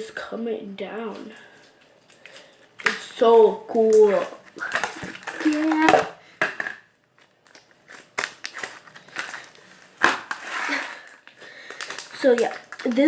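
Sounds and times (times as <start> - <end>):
slime clicks and crackles: 11.6 - 13.0.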